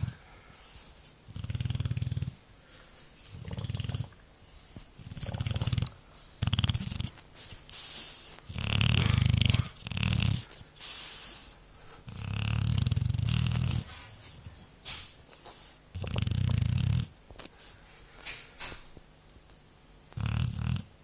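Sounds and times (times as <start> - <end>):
dog snoring: 0.0 - 2.4, 3.2 - 14.0, 15.5 - 17.1, 20.1 - 21.0
dog breathing quietly: 0.0 - 18.2.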